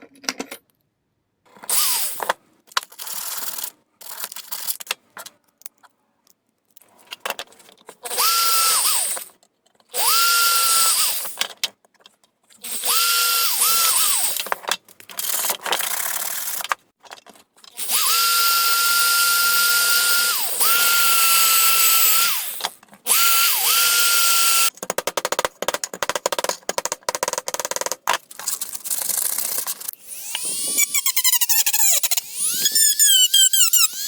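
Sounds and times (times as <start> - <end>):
power tool cutting sheet metal: 12.6 - 14.4, 17.8 - 24.7, 29.1 - 34.0.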